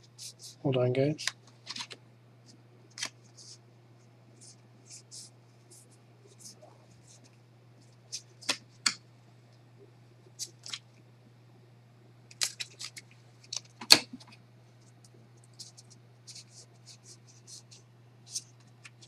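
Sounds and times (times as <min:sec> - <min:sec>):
cards scraping and clicking: 0:01.2 - 0:02.0, 0:02.9 - 0:03.6, 0:08.1 - 0:09.0, 0:10.4 - 0:10.8, 0:12.3 - 0:14.4, 0:15.4 - 0:19.0.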